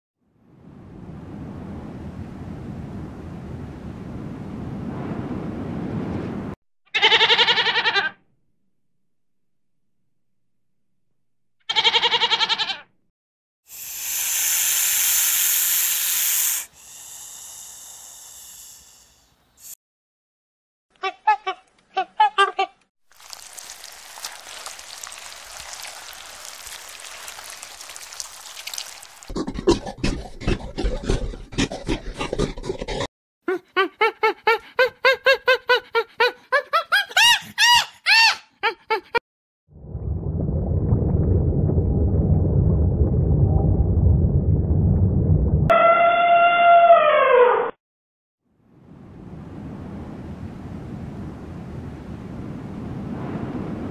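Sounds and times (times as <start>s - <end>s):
animal calling in short cries: 6.9s - 8.2s, 11.7s - 12.9s
trembling bleat: 6.9s - 8.2s, 11.7s - 12.8s
loud hiss: 13.7s - 19.8s.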